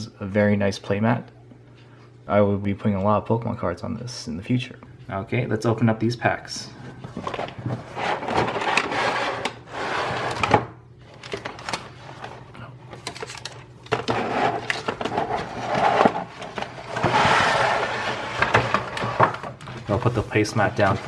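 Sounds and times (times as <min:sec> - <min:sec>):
packaging rustling: 0:11.1 - 0:21.0.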